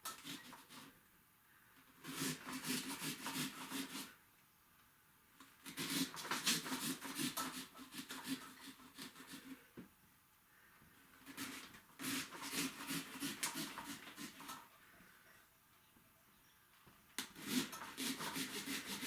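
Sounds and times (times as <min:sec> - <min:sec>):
hand saw sawing pumpkin: 0:02.0 - 0:04.2, 0:05.6 - 0:09.6, 0:11.3 - 0:14.6, 0:17.3 - 0:19.0.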